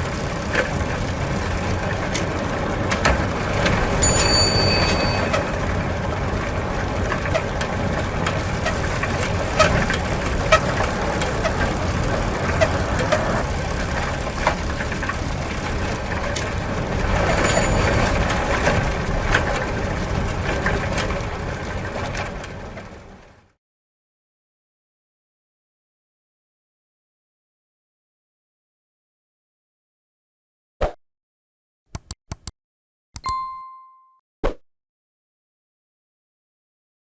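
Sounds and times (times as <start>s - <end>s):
bicycle tyres rumbling: 0.0s - 23.5s
bicycle drivetrain clicks and rattles: 0.0s - 23.6s
bicycle bell ringing: 3.5s - 6.0s, 17.1s - 18.8s, 33.2s - 34.2s.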